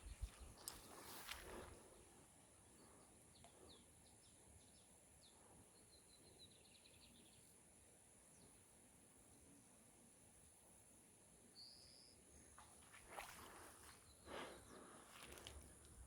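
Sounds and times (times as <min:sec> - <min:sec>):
soft rustle: 0:00.1 - 0:02.0, 0:12.6 - 0:16.0
birds chirping: 0:11.6 - 0:15.8.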